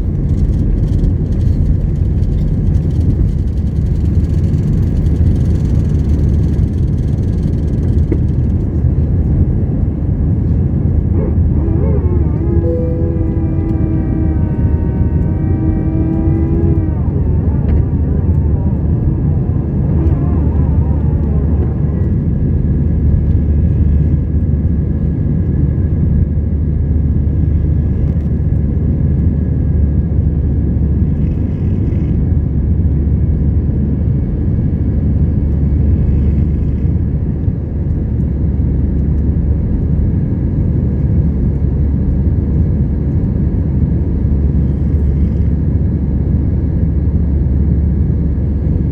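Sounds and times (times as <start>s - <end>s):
pitched whine: 0.0s - 24.5s
aircraft cabin engine rumble: 0.0s - 48.9s.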